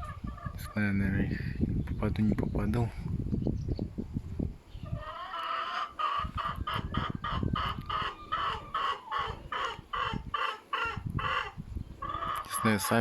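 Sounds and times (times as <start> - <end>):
chicken clucking: 4.8 - 13.0.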